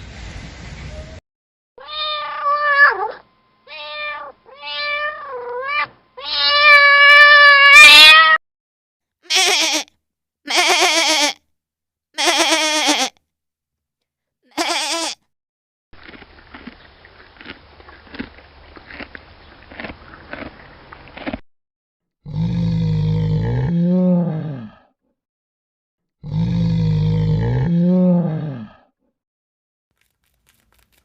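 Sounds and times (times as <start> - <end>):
meow-like animal cries: 1.8 - 8.4, 9.3 - 9.9, 10.5 - 11.4, 12.2 - 13.1, 14.5 - 15.2
quavering bleats: 9.3 - 9.9, 10.5 - 11.4, 12.2 - 13.1, 14.5 - 15.2.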